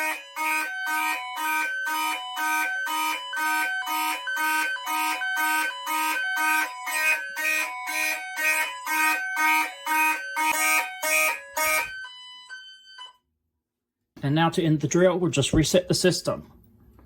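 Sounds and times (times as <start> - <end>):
alternating high-low alarm tone: 0.0 - 13.2
fire alarm horns pulsing: 0.0 - 13.2.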